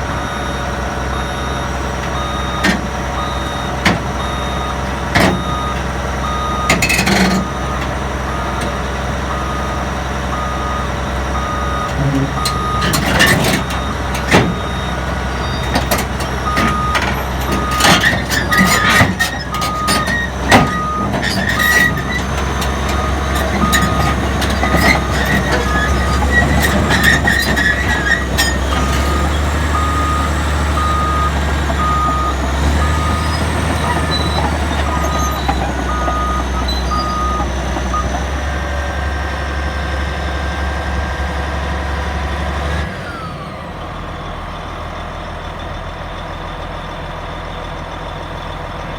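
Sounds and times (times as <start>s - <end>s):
diesel engine running: 0.0s - 48.9s
reversing alarm beeps: 0.1s - 8.7s, 9.3s - 38.3s.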